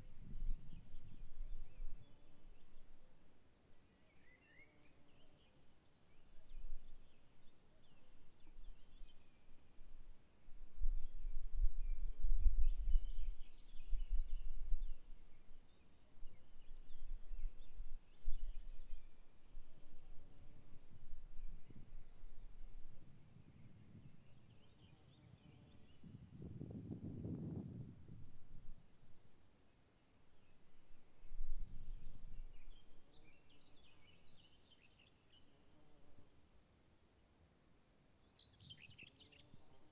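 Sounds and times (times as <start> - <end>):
crickets trilling: 0.0 - 39.9
wind gusting on microphone: 25.2 - 28.8.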